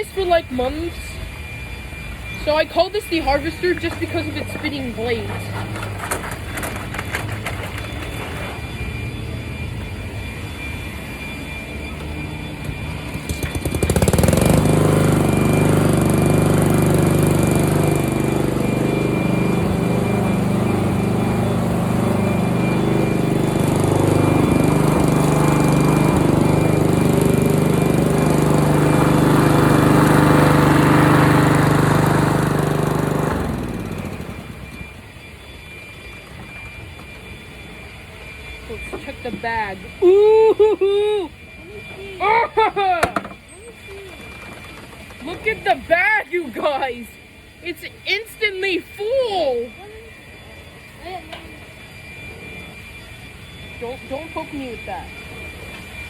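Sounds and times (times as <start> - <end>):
lawn mower engine shredding leaves: 3.5 - 8.8, 12.8 - 34.8.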